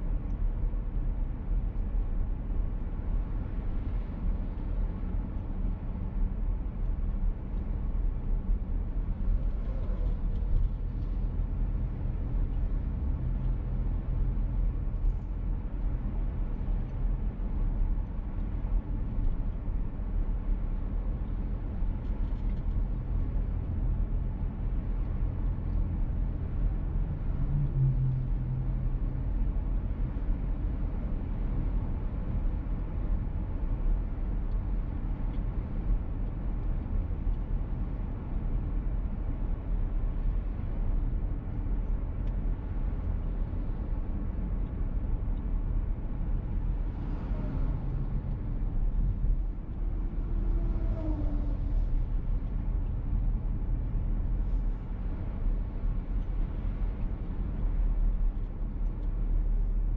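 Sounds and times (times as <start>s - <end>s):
road and tyre rumble: 0.0s - 59.9s.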